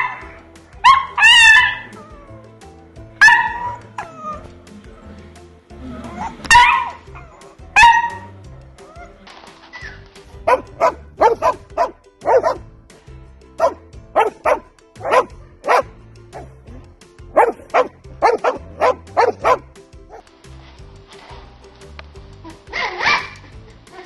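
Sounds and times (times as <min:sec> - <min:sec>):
dog barking: 0:00.0 - 0:00.2, 0:00.8 - 0:01.9, 0:03.2 - 0:03.8, 0:06.5 - 0:08.3, 0:10.4 - 0:12.6, 0:13.6 - 0:16.5, 0:17.3 - 0:20.2, 0:22.8 - 0:23.4
background music: 0:00.0 - 0:24.0.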